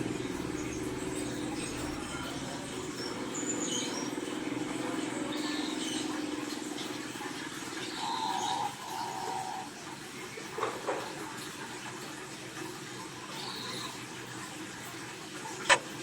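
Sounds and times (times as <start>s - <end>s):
small birds chirping: 0.0s - 7.1s
low mechanical hum: 0.0s - 10.3s.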